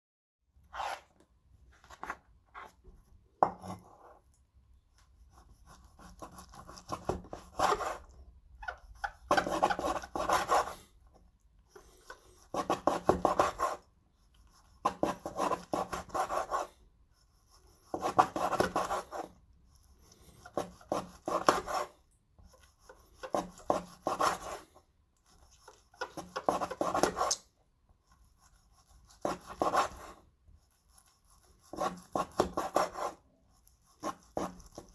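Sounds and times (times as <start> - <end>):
knife sawing on chopping board: 5.5 - 8.1, 9.0 - 10.9, 20.4 - 22.0, 29.1 - 30.2, 31.3 - 33.2.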